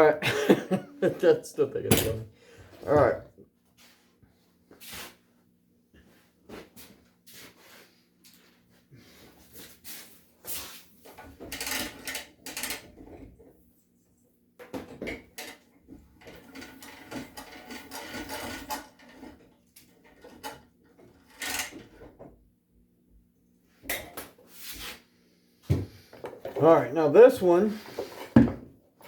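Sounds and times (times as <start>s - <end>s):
tools clattering on hard surface: 14.6s - 22.2s.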